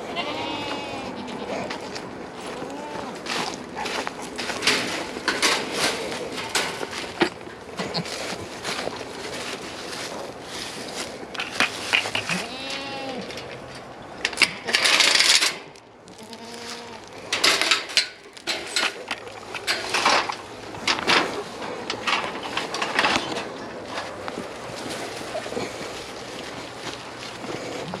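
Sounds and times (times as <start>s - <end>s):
goats bleating: 0.0s - 5.0s, 7.8s - 8.6s, 12.1s - 13.5s, 16.1s - 17.3s
loud rustling: 3.3s - 12.3s.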